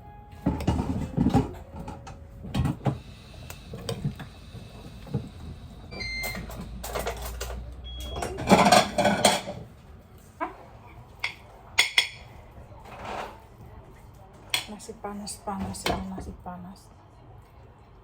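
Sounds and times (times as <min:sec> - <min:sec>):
dishes and utensils clattering: 0:00.4 - 0:03.0, 0:06.3 - 0:09.7
kitchen appliance beeps: 0:05.9 - 0:06.6, 0:07.8 - 0:08.5.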